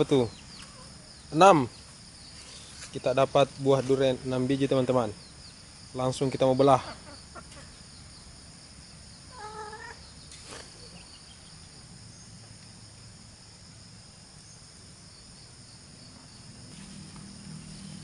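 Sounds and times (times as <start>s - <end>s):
high-pitched insect buzz: 5.2s - 18.0s.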